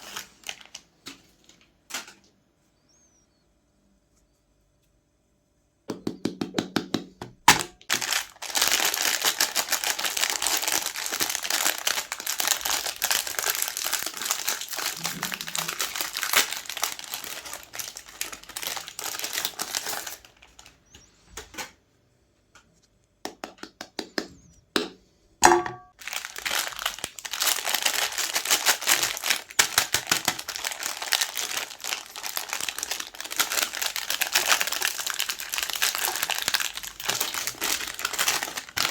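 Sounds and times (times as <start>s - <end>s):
ice cream wrappers crinkling: 0.0s - 2.2s, 7.8s - 21.0s, 26.0s - 38.9s.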